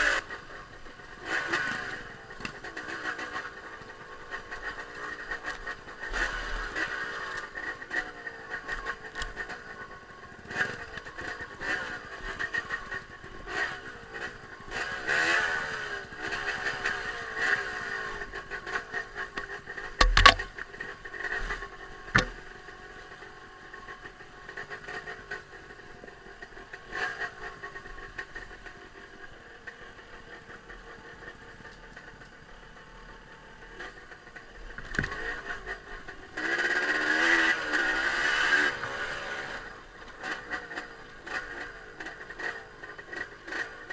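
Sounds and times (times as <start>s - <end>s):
motorcycle engines revving: 0.0s - 43.9s
sharp knocks: 20.0s - 20.5s, 22.1s - 22.4s.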